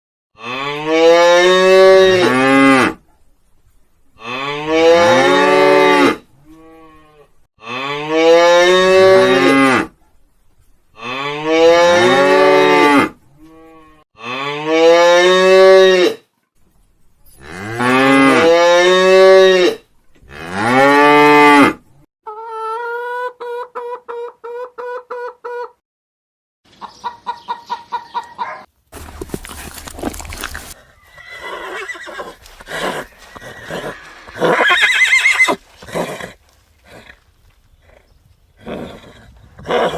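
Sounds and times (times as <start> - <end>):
cattle mooing: 4.2 - 9.9, 11.0 - 16.2.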